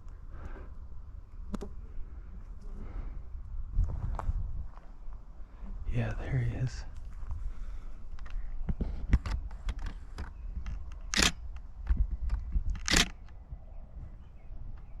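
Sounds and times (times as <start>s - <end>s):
camera shutter clicking: 11.0s - 11.4s, 12.8s - 13.3s.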